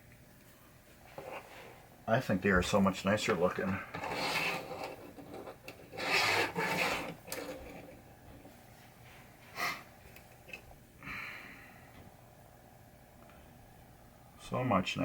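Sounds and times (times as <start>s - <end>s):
decals peeling and rasping: 3.6s - 8.0s.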